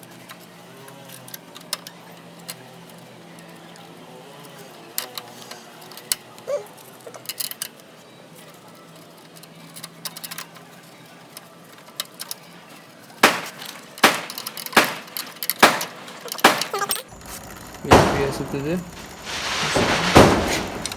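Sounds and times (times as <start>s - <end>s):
sharp knocks: 13.2s - 20.9s.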